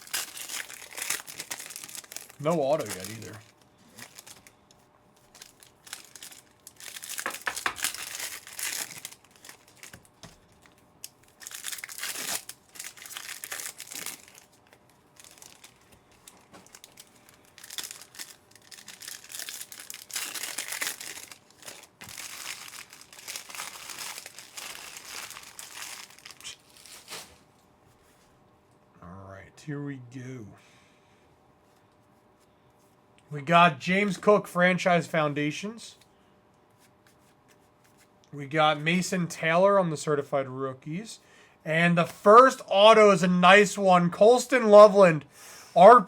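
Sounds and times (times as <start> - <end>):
wrappers tearing and crinkling: 0.0 - 4.6, 5.2 - 27.4.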